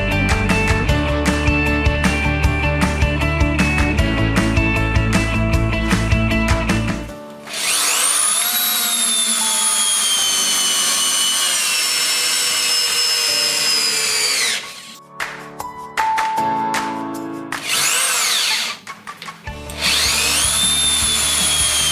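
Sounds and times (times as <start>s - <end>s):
background music: 0.0s - 21.9s
drill motor whining: 7.4s - 15.0s, 17.6s - 18.8s, 19.7s - 21.9s.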